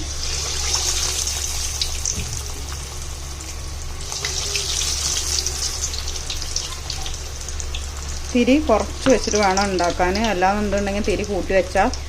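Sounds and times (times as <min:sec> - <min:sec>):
chicken frying in hot oil: 0:00.0 - 0:12.0.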